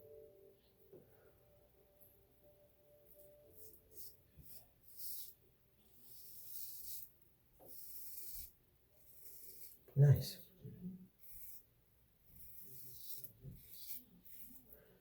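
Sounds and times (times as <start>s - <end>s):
razor scraping stubble: 3.6s - 10.0s, 11.1s - 14.9s.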